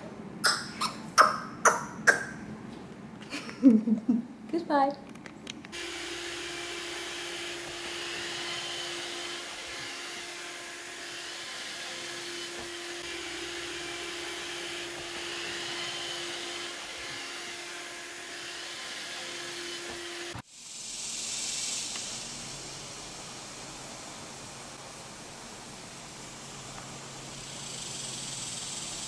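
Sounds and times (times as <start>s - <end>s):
robot vacuum motor hum: 5.8s - 17.6s.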